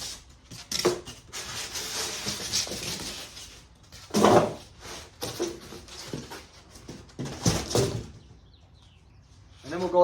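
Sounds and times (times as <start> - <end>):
styrofoam rustling and scraping: 0.0 - 7.5.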